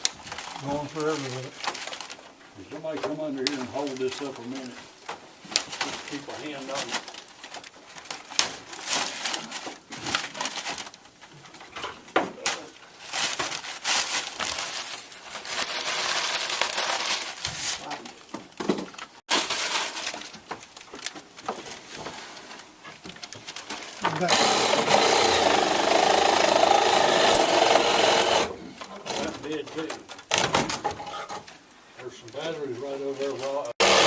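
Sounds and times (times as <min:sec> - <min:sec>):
crunching and scraping: 0:00.0 - 0:30.3.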